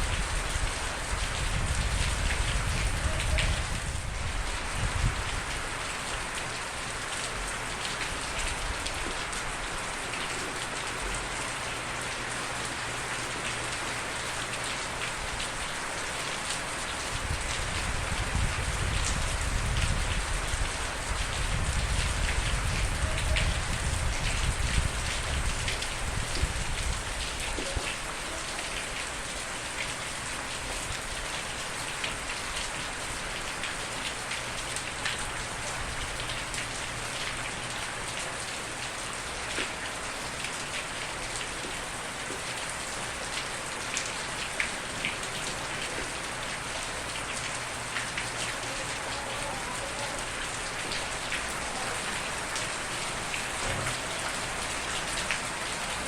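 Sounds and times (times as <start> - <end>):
steady rain hiss: 0.0 - 56.0
rain drop ticks: 39.5 - 42.7.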